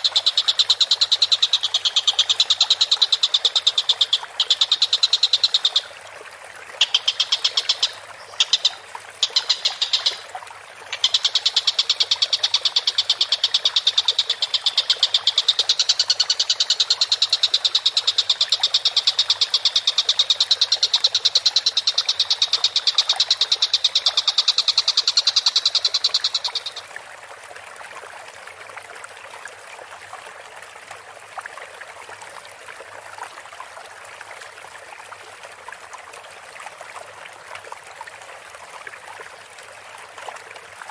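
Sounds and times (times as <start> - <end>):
kingfisher trilling call: 0.0 - 5.9, 6.8 - 10.2, 10.9 - 26.8
running water: 0.0 - 40.9.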